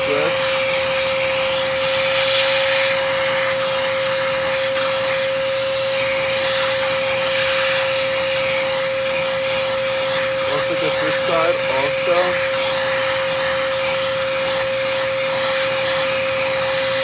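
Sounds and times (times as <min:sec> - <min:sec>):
vacuum cleaner motor whine: 0:00.0 - 0:17.0
air rushing into nozzle: 0:01.7 - 0:04.1.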